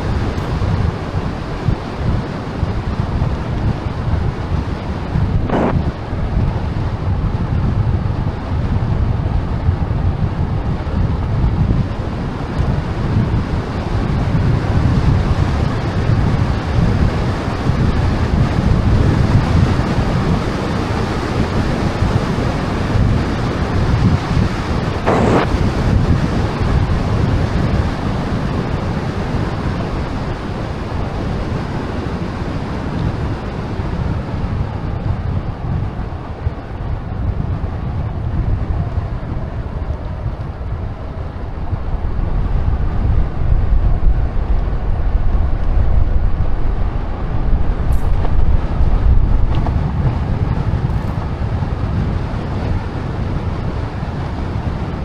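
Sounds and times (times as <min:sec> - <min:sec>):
wind buffeting microphone: 0:00.0 - 0:55.0
short sharp noise: 0:25.1 - 0:25.5.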